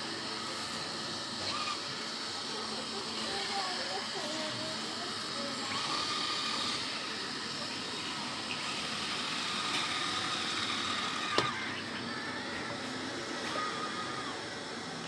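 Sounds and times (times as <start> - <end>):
robot vacuum cleaner whirring: 0.0 - 15.0.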